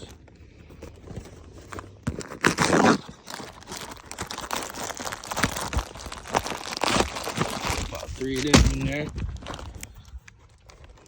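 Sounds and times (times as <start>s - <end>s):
crinkling plastic wrappers: 0.9s - 11.0s.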